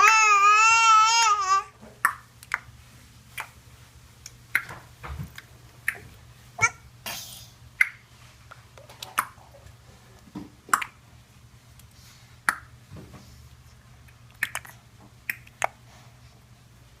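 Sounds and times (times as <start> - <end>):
tongue clicks: 14.3 - 15.8.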